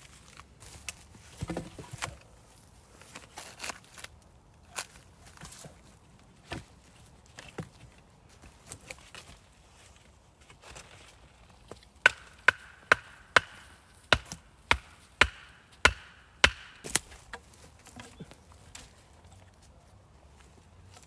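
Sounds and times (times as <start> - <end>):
tool striking wood: 12.0 - 17.0.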